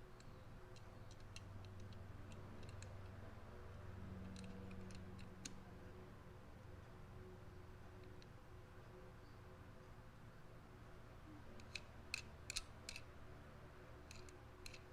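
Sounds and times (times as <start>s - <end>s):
low steady hum: 0.0s - 14.9s
faint light clicks and ticks: 0.1s - 3.2s, 4.2s - 5.7s, 14.0s - 14.9s.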